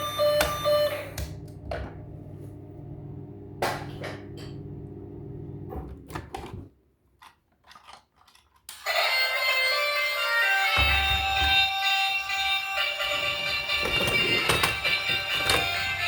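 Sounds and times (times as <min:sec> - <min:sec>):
steady low hum: 0:00.8 - 0:05.8
plastic toys and packaging clicking: 0:07.2 - 0:09.0, 0:13.1 - 0:16.0.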